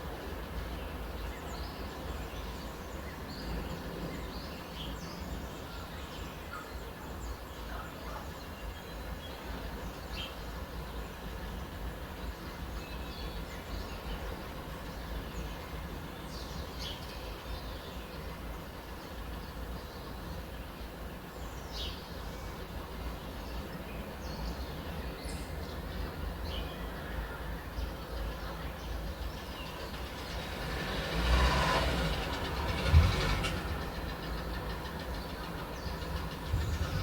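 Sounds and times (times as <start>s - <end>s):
birds chirping: 21.4s - 37.0s
steady low rumble: 33.4s - 37.0s.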